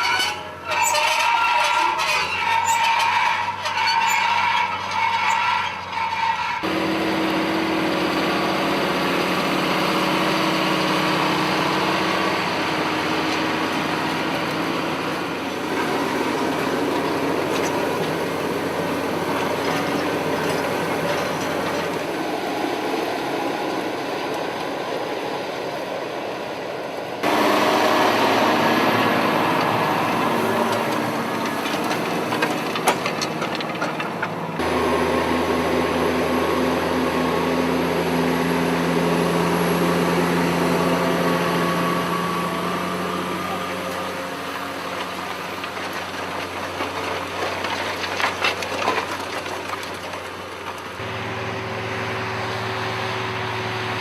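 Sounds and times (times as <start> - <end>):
tractor engine running: 0.0 - 54.0.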